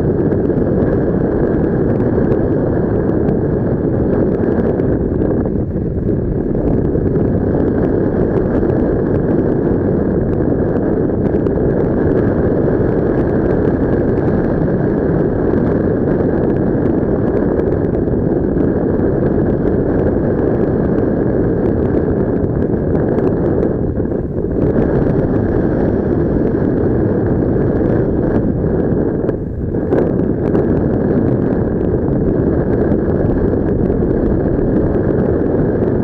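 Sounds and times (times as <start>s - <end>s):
wind rushing over microphone: 0.0s - 36.0s.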